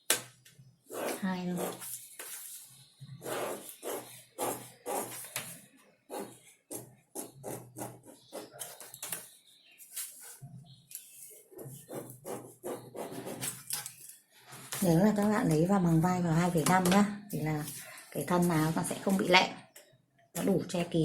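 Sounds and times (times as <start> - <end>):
marking tool scratching: 0.9 - 9.3, 9.9 - 10.4, 11.0 - 13.6.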